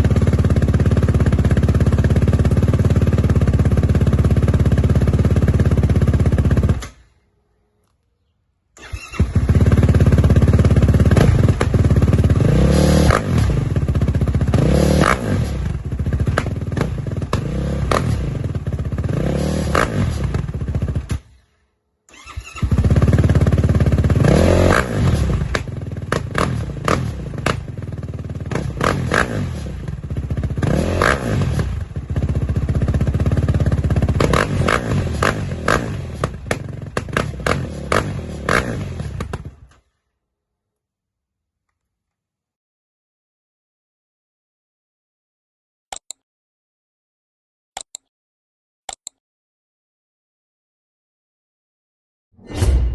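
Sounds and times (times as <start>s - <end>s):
quad bike engine revving: 0.0s - 6.9s, 8.8s - 21.2s, 22.1s - 39.7s.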